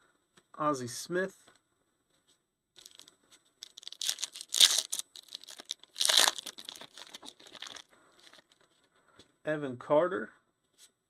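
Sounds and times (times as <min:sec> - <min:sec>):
foil wrapper crinkling: 0:02.8 - 0:08.6
foil wrapper ripping: 0:03.6 - 0:08.6.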